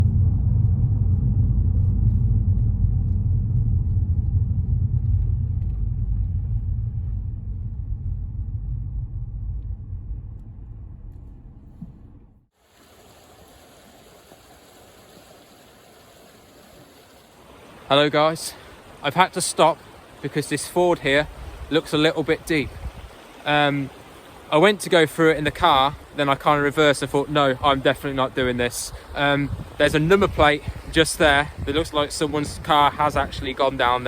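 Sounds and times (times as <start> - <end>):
deep low rumble: 0.0 - 12.5
flowing floodwater: 12.6 - 34.0.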